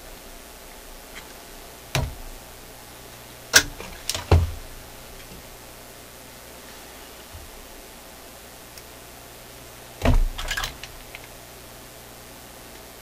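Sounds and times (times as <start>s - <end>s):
low hiss and hum: 0.0s - 13.0s
dull thump: 1.9s - 2.3s, 3.6s - 4.7s, 10.0s - 10.4s.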